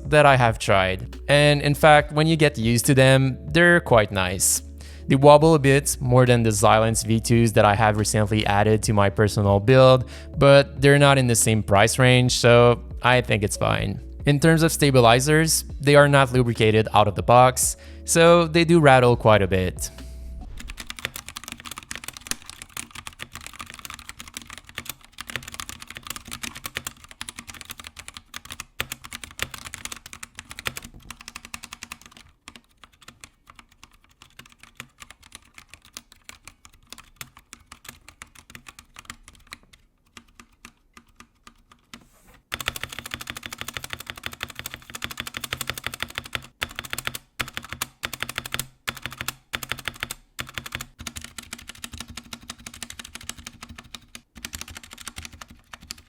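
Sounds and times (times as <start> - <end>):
mechanical keyboard typing: 20.6 - 56.0
rattling keyboard stabilizers: 20.6 - 56.0.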